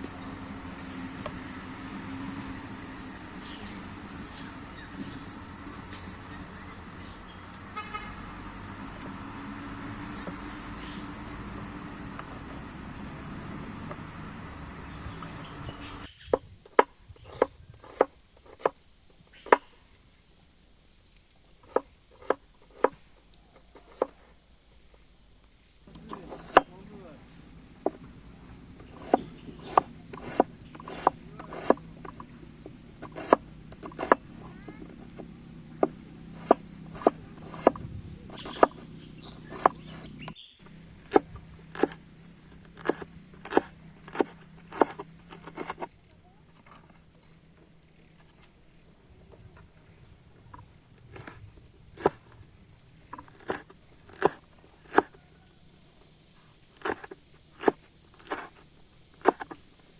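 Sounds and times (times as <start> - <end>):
low steady hum: 0.0 - 16.1, 25.9 - 54.8.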